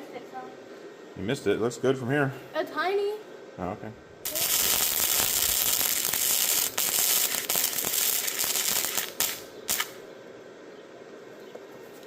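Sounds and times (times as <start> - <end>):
welder arc crackling: 4.2 - 10.0.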